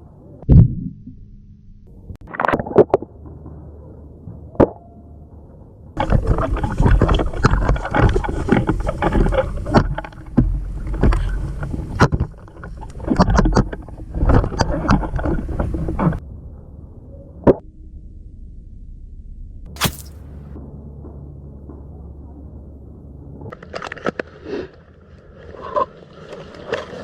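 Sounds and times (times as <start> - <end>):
foliage and clothing rustling: 19.7 - 20.2
short click: 19.7 - 20.2
sharp crack: 19.7 - 20.5.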